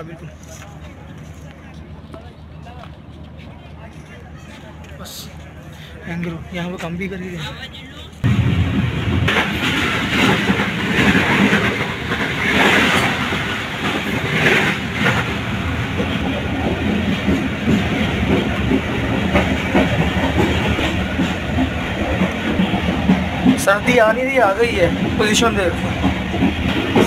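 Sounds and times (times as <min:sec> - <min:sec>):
train wheels rumbling on rails: 0:00.0 - 0:27.0.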